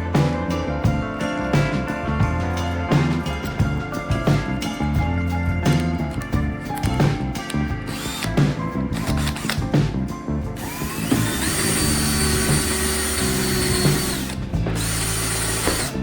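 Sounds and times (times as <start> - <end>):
background music: 0.0 - 16.0
electric drill spinning: 6.8 - 8.4, 9.0 - 9.7, 10.6 - 16.0.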